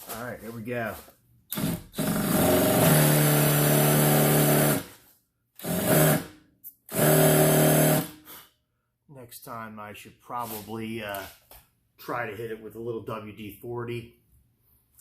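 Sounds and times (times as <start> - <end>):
impact driver spinning: 1.5 - 5.0.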